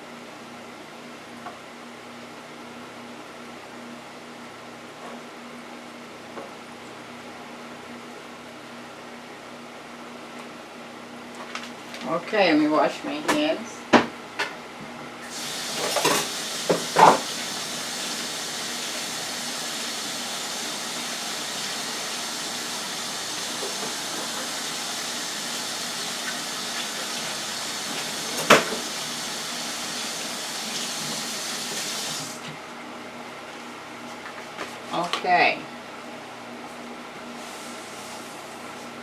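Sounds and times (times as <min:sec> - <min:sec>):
tap water running: 0:15.2 - 0:32.6.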